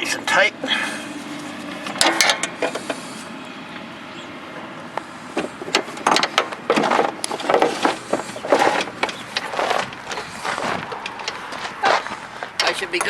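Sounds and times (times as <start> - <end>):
tools clattering and knocking: 1.4 - 3.1, 5.3 - 13.0.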